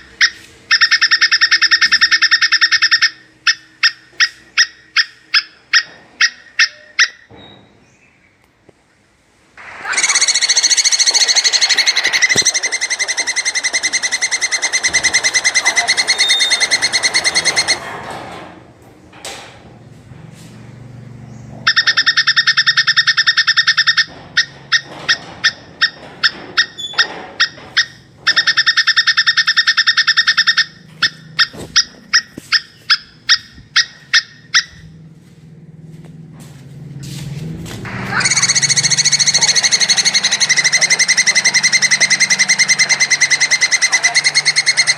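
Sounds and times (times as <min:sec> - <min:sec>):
squirrel chattering trills: 0:00.0 - 0:07.3, 0:09.8 - 0:17.8, 0:21.7 - 0:26.0, 0:27.4 - 0:34.8, 0:38.1 - 0:44.9.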